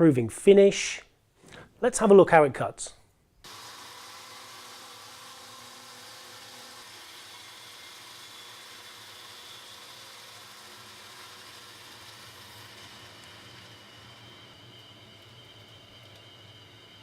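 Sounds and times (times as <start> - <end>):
bandsaw cutting wood: 3.4 - 14.4.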